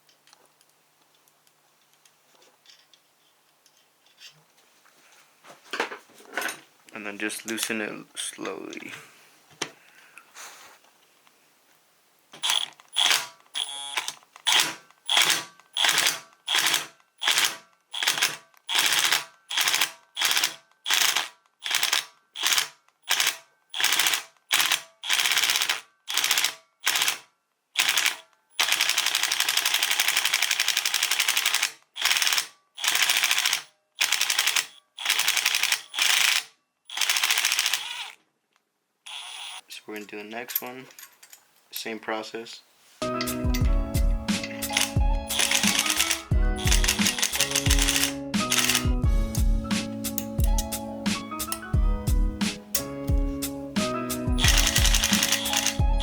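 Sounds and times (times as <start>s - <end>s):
ratchet clicking: 12.4s - 27.2s, 27.8s - 38.2s, 44.3s - 49.4s, 54.4s - 55.8s.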